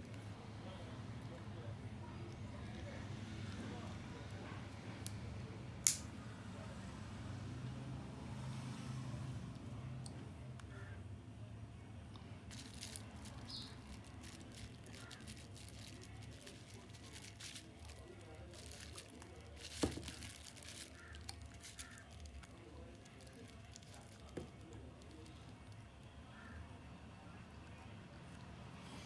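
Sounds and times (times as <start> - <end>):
plastic parts rustling: 12.5 - 25.8.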